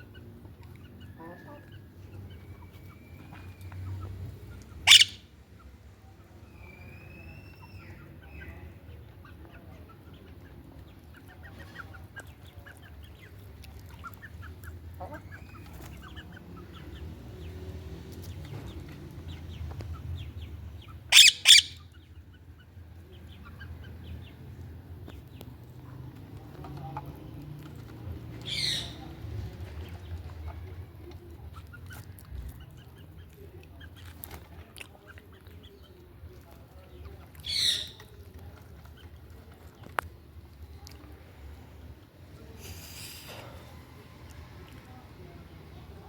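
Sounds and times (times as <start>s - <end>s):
soft bird chirps: 0.6s - 5.3s, 18.3s - 22.4s
parakeet screeching: 4.8s - 5.2s, 21.1s - 21.8s.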